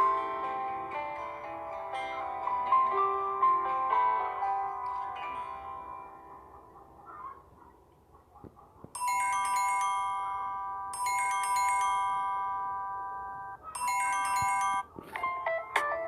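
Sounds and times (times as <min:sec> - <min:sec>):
bell-like phone chime: 0:09.0 - 0:15.8.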